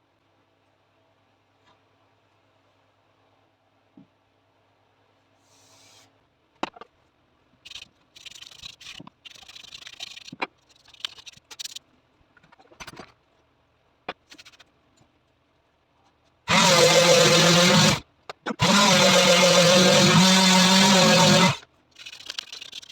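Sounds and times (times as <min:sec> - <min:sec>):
electric power tool running: 0:16.5 - 0:21.6
tool scraping wood: 0:16.5 - 0:22.7.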